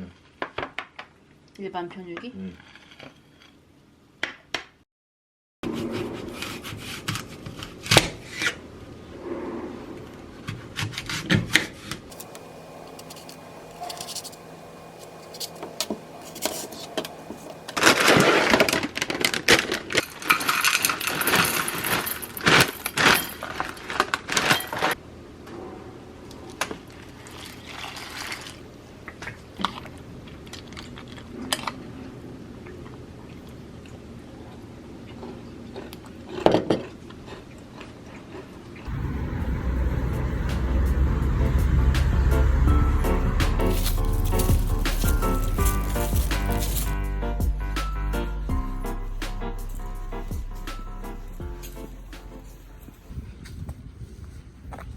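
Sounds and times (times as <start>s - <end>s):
tableware rubbing and scraping: 13.0s - 18.2s, 43.6s - 47.0s.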